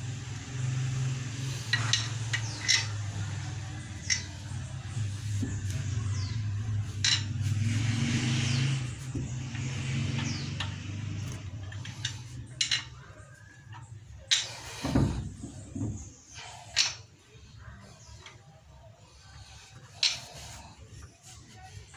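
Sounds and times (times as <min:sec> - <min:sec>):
steady low hum: 0:00.0 - 0:21.9
metal tools clinking and knocking: 0:01.5 - 0:07.6, 0:09.1 - 0:15.2.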